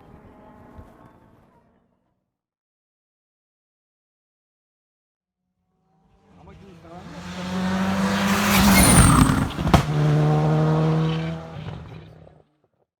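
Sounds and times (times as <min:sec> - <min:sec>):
rally car engine passing: 0:06.0 - 0:12.4.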